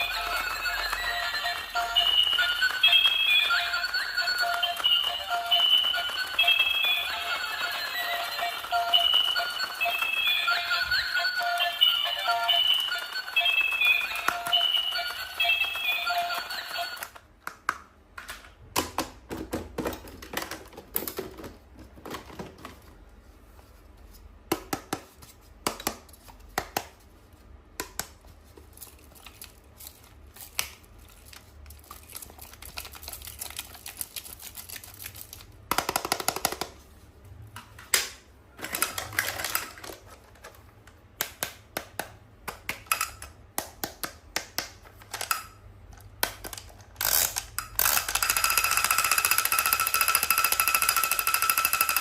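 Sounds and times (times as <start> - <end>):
clicks and taps handling toys: 24.4 - 27.1, 27.7 - 36.8, 37.6 - 52.0
plastic packaging rustling: 28.6 - 35.6.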